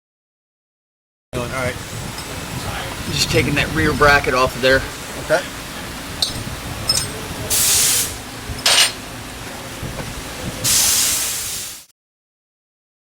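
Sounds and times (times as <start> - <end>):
exhaust air hissing: 1.4 - 11.9
air ratchet running: 1.8 - 3.6, 5.4 - 11.8.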